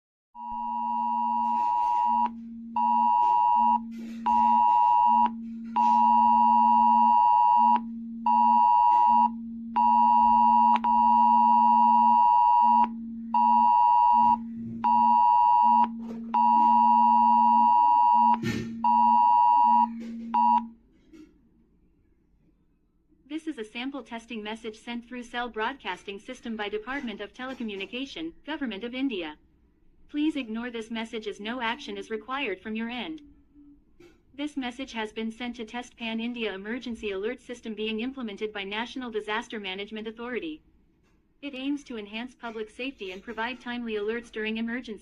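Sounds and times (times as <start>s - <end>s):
phone alert beeping: 0.4s - 20.8s
low buzz: 2.2s - 20.7s.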